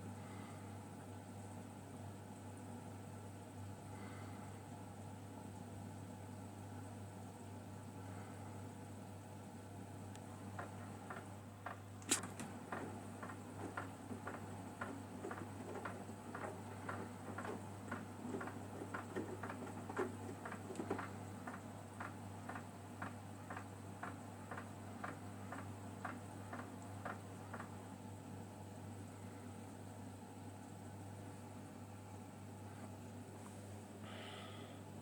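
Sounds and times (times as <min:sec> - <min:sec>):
washing machine humming: 0:00.0 - 0:35.0
sharp click: 0:12.0 - 0:12.5.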